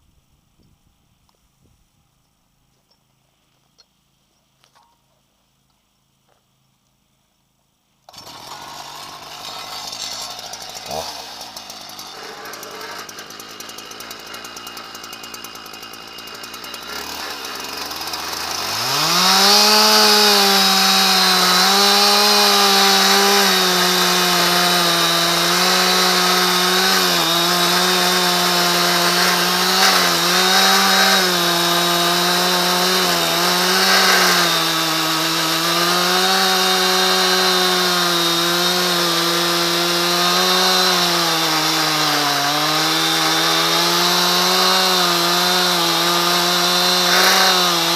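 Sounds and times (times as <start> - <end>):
chainsaw cutting log: 8.1 - 47.9.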